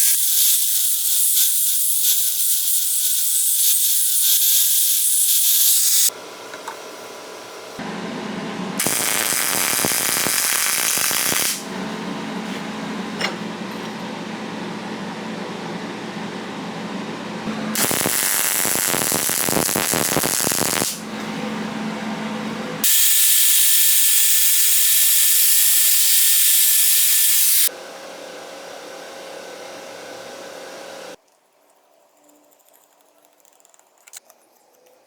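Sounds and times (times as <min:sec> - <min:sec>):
power tool crackling on metal: 0:00.0 - 0:06.1, 0:08.8 - 0:11.6, 0:17.8 - 0:21.0
loud hiss with thin whine: 0:22.9 - 0:27.7.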